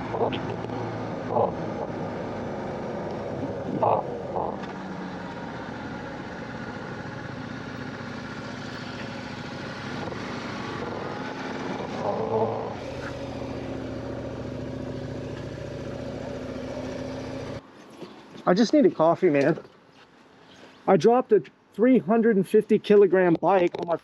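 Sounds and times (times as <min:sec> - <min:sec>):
motorcycle engine running: 0:00.0 - 0:17.6.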